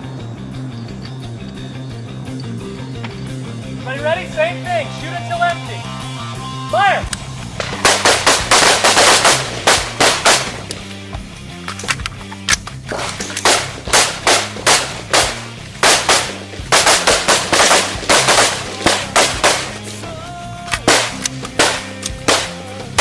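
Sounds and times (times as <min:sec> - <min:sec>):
background music with bass: 0:00.0 - 0:23.0
rifles firing rapid shots: 0:07.6 - 0:10.9, 0:11.7 - 0:23.0.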